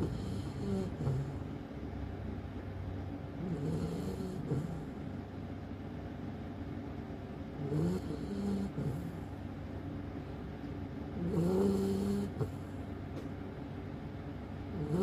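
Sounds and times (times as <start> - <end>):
puppy snoring: 0.0 - 1.6, 3.4 - 5.3, 7.5 - 9.4, 11.1 - 12.9, 14.7 - 15.0.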